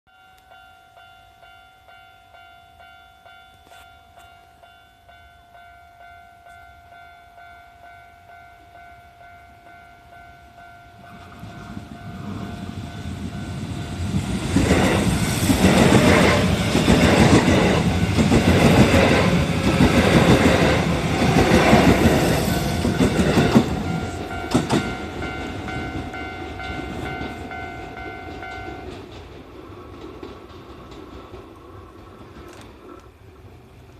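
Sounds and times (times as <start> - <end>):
level crossing alarm bell: 0.1 - 14.2, 15.3 - 29.0
train rumble and wheel clatter: 8.7 - 33.9.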